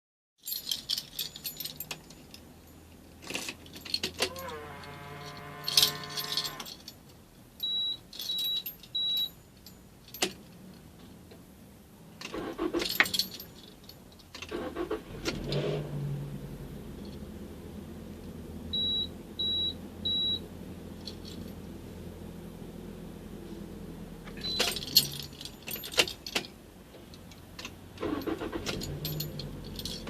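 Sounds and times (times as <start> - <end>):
car keys jangling: 0.4 - 10.9, 12.2 - 15.7, 20.9 - 21.7, 24.3 - 30.0
humming tone: 4.2 - 6.7
car engine starting and running: 12.1 - 13.4, 14.4 - 26.1, 27.4 - 30.0.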